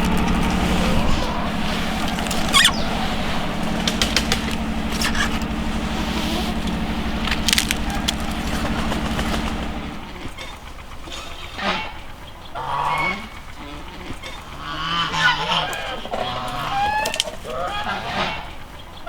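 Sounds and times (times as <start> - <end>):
small engine running: 0.0 - 18.8
sharp clicks and knocks: 3.6 - 5.5, 6.6 - 9.6.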